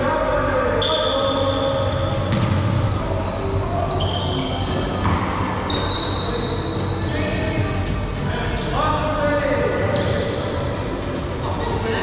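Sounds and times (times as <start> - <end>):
high squeaking tones: 0.8 - 7.8
balls bouncing on hard floor: 1.7 - 3.1, 4.6 - 5.8.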